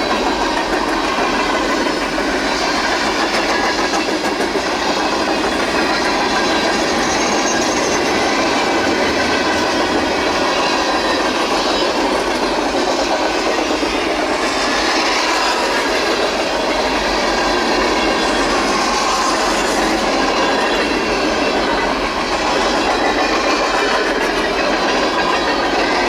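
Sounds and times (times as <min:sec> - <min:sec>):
train wheels clattering over rail joints: 0:00.0 - 0:26.0.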